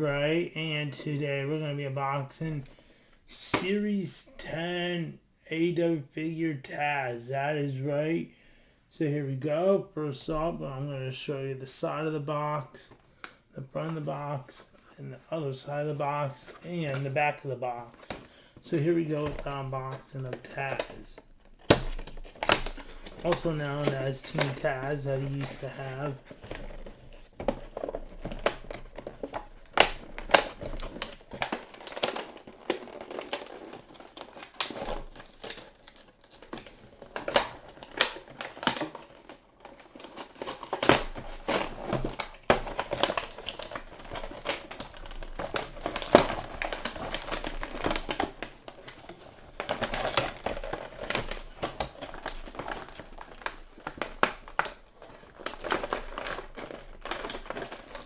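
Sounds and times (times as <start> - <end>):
plastic and cardboard crinkling: 11.6 - 58.0.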